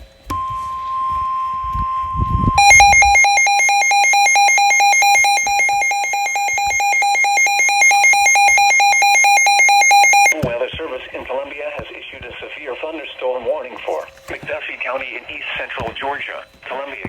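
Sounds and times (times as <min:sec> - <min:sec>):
pulsing buzzy alarm beeps: 0:00.3 - 0:10.4
steady alarm tone: 0:00.3 - 0:10.4.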